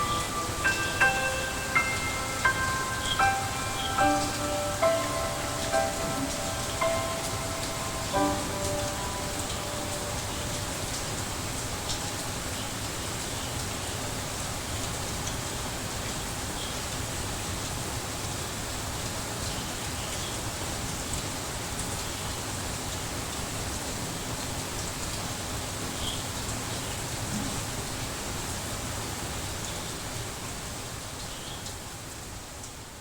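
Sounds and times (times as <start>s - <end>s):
steady rain hiss: 0.0s - 33.0s.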